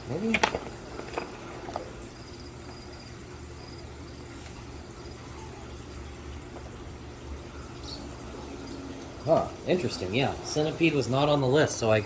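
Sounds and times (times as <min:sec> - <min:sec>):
low steady hum: 0:00.0 - 0:12.0
high insect-like chirps: 0:01.8 - 0:05.8.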